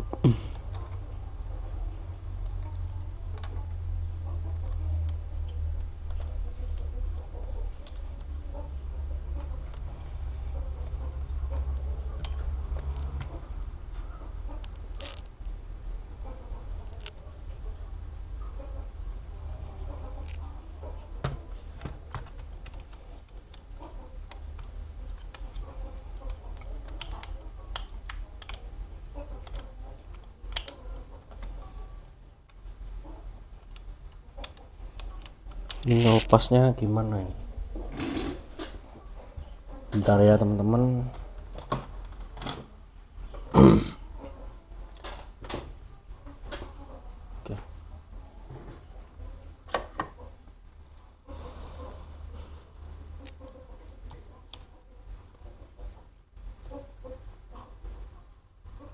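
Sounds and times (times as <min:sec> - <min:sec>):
small tools clicking and tapping: 0:29.4 - 0:31.6.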